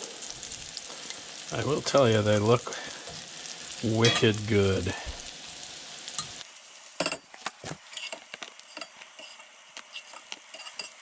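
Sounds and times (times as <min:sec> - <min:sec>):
mushrooms sizzling in butter: 0:00.0 - 0:11.0
utensil scraping pan: 0:07.0 - 0:11.0.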